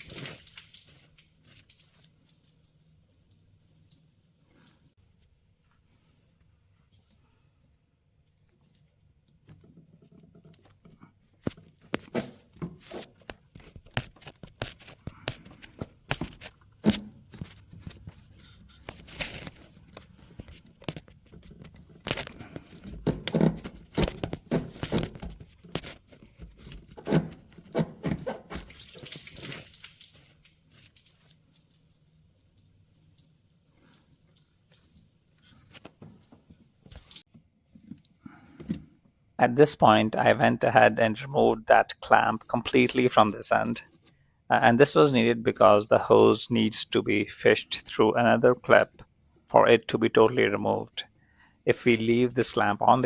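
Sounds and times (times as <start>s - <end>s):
clicks knocks and scrapes of hand work: 8.6s - 29.6s.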